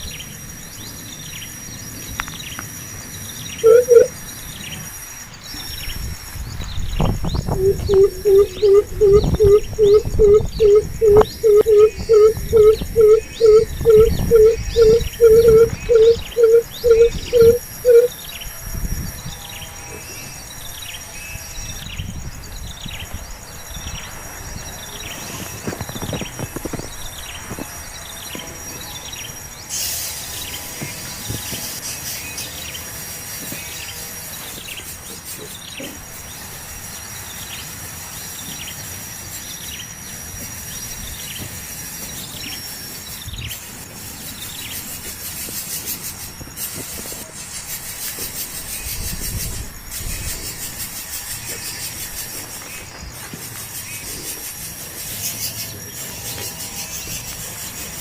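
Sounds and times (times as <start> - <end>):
bird chirping: 0.0 - 4.8, 6.7 - 18.4
high insect-like drone: 0.0 - 58.0.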